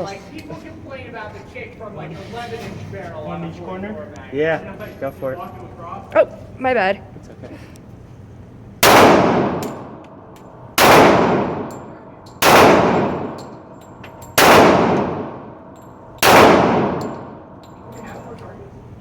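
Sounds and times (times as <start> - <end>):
handgun shots: 8.8 - 10.1, 10.8 - 13.6, 14.2 - 15.6, 16.2 - 17.4.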